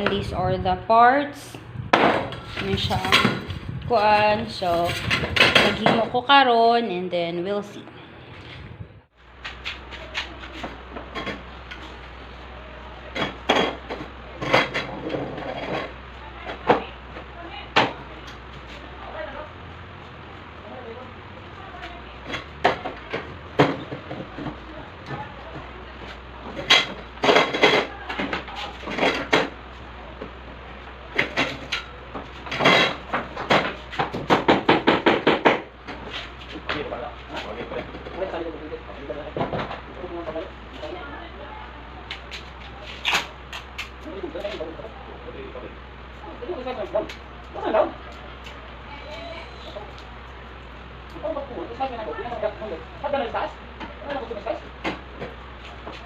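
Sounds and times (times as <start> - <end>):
steady low hum: 0.0 - 56.0
crib parts knocking and clattering: 32.5 - 36.9.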